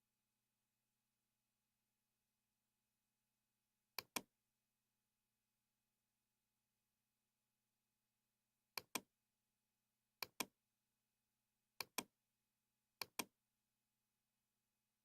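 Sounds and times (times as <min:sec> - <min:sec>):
computer mouse double-clicks: 0:04.0 - 0:04.3, 0:08.8 - 0:09.1, 0:10.2 - 0:10.5, 0:11.8 - 0:12.1, 0:13.0 - 0:13.3.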